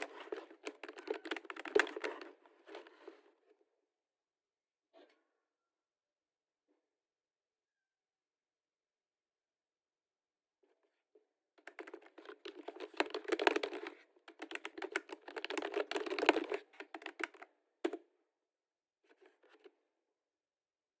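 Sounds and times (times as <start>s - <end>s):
computer keyboard typing: 0.0s - 2.3s, 11.7s - 17.4s.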